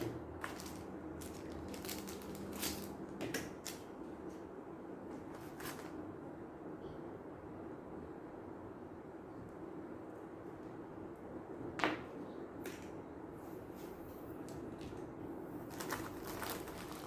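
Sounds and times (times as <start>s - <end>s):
packaging rustling: 0.4s - 3.8s, 15.7s - 17.0s.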